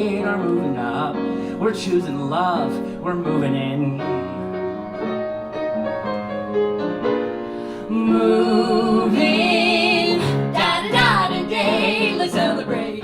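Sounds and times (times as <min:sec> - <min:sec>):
piano playing sustained chords: 0:00.0 - 0:13.0.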